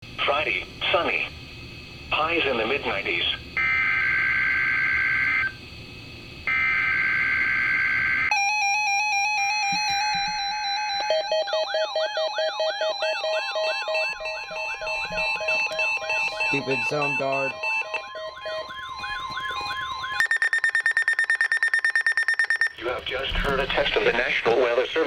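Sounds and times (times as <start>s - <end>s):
steady warning alarm tone: 2.2s - 5.7s, 6.4s - 25.0s
rising warble with pulsing beeps: 9.4s - 24.5s
harsh buzzy data bursts: 12.6s - 25.0s.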